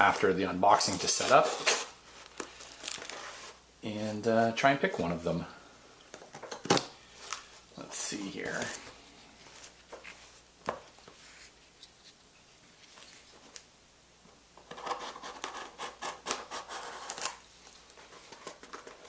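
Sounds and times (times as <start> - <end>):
packaging scratching and rustling: 0.1 - 3.6, 14.7 - 19.0.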